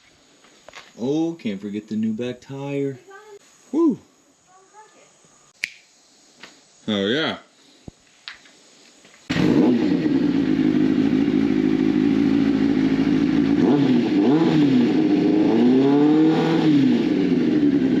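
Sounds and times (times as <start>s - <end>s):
motorcycle engine idling and revving: 9.3s - 18.0s.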